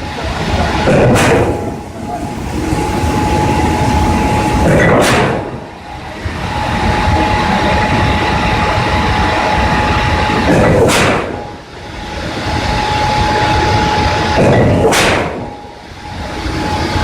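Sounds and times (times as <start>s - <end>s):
forging press flywheel whine: 0.0s - 17.0s
loud press cycle burst: 0.4s - 7.8s.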